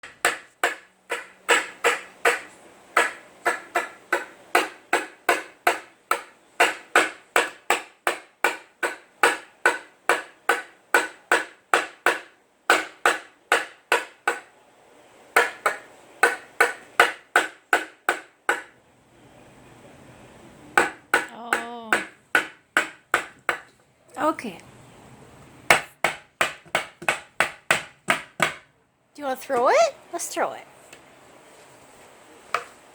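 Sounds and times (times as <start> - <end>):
rubber ball bouncing on hard floor: 0.0 - 14.5, 15.4 - 18.8, 20.8 - 23.7, 25.7 - 28.7.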